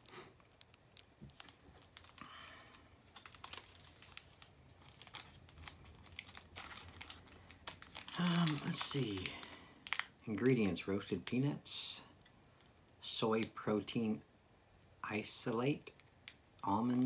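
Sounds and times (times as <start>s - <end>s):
plastic wrapper crinkling: 0.0s - 11.6s, 15.8s - 17.0s.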